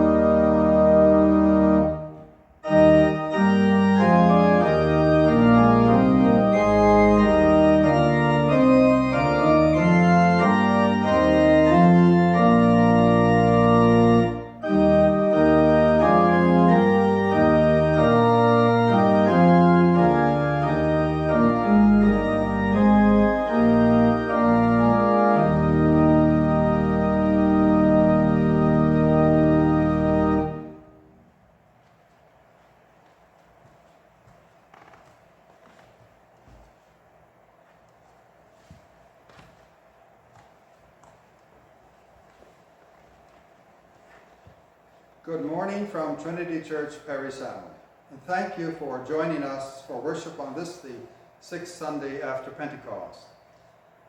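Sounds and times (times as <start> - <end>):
church organ playing chords: 0.0 - 31.3.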